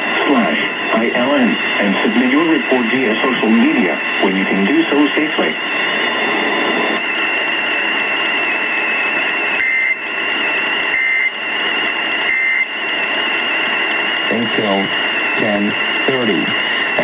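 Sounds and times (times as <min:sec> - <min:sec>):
radio static hiss: 0:00.0 - 0:17.0
short data bursts: 0:10.8 - 0:11.4, 0:12.2 - 0:12.8.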